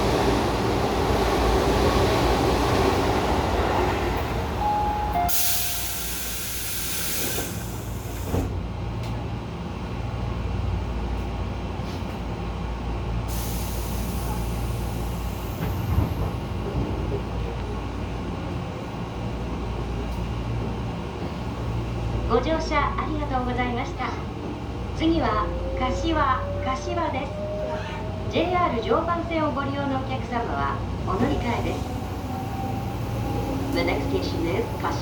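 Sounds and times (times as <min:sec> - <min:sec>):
train low hum: 0:00.0 - 0:35.0
compressed air hiss: 0:05.3 - 0:08.3
train doors thudding shut: 0:07.0 - 0:09.2, 0:15.5 - 0:17.4.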